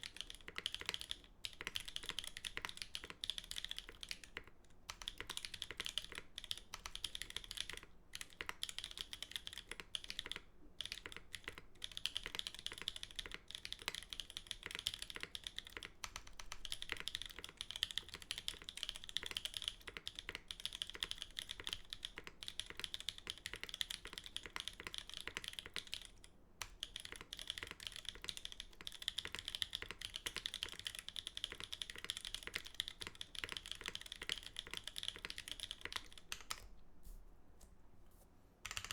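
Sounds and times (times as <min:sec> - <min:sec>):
mechanical keyboard typing: 0:00.0 - 0:36.7, 0:38.6 - 0:38.9.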